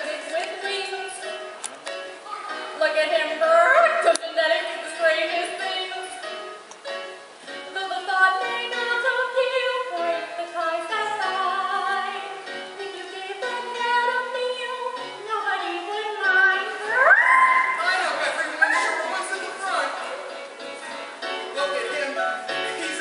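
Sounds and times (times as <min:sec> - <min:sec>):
instrumental accompaniment: 0:00.0 - 0:23.0
woman singing show tune: 0:02.7 - 0:06.4.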